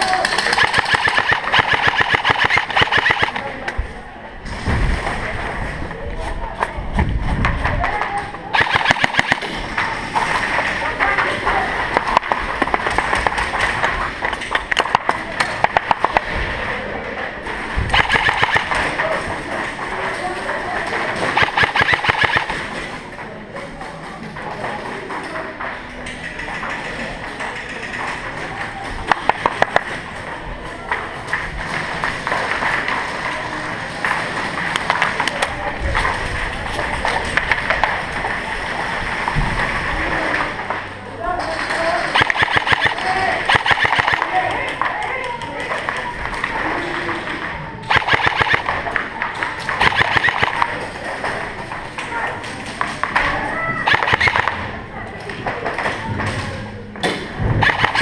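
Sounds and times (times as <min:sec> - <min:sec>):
airsoft guns firing: 0:00.0 - 0:03.7, 0:08.5 - 0:16.6, 0:17.5 - 0:22.9, 0:28.1 - 0:30.1, 0:41.6 - 0:45.1, 0:45.7 - 0:51.5, 0:52.7 - 0:54.8, 0:57.0 - 0:58.0
steady background noise: 0:00.0 - 0:58.0
airsoft guns firing pops: 0:00.4 - 0:03.4, 0:08.5 - 0:10.5, 0:17.9 - 0:18.9, 0:21.2 - 0:22.6, 0:42.2 - 0:44.4, 0:47.9 - 0:48.8, 0:49.7 - 0:50.8, 0:53.9 - 0:54.7, 0:57.6 - 0:58.0.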